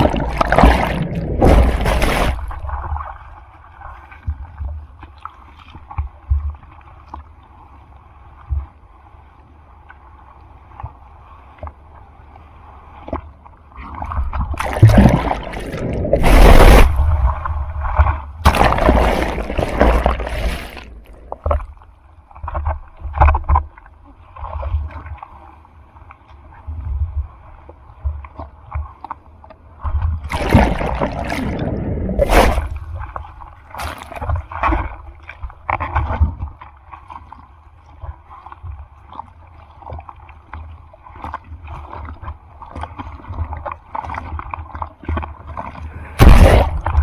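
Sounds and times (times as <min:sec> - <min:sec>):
surf buffeting and splashing: 0:00.0 - 0:03.0, 0:14.6 - 0:21.6, 0:30.3 - 0:33.2.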